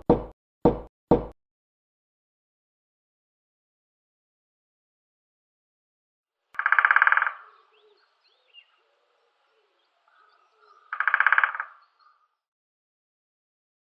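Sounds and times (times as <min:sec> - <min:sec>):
woodpecker drumming on wood: 0:00.0 - 0:01.4, 0:06.6 - 0:07.4, 0:10.9 - 0:11.8
faint bird chirps: 0:06.6 - 0:12.5.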